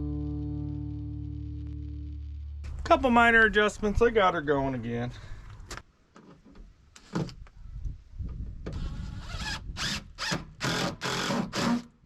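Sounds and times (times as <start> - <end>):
cordless screw gun bursts: 8.8 - 12.0.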